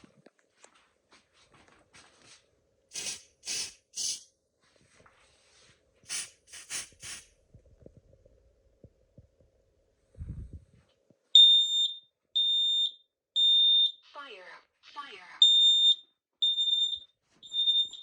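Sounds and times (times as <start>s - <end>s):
aerosol spray hissing: 2.9s - 4.3s, 6.1s - 7.3s.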